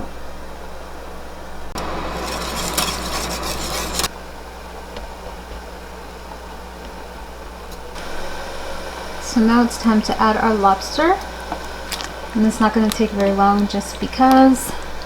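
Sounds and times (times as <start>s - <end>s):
steady low hum: 0.1s - 15.0s
broth bubbling in a pot: 8.0s - 15.0s.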